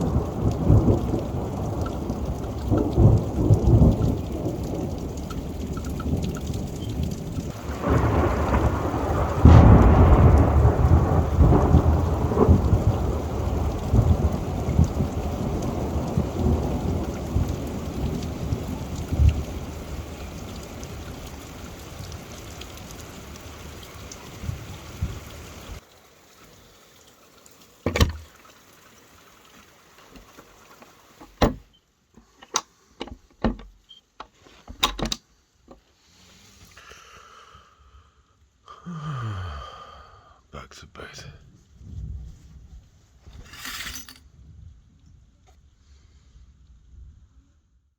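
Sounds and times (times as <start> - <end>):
thunder rumbling: 0.0 - 25.8
rain: 0.0 - 47.9
faint steady hiss: 25.0 - 44.1.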